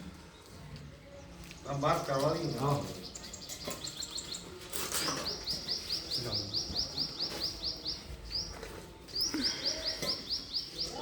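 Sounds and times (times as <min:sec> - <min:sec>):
small bird chirping: 0:02.5 - 0:08.6, 0:09.2 - 0:11.0.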